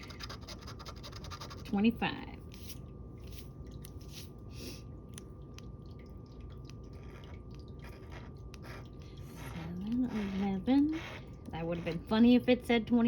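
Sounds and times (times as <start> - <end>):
lottery ticket being scratched: 9.2 - 12.2.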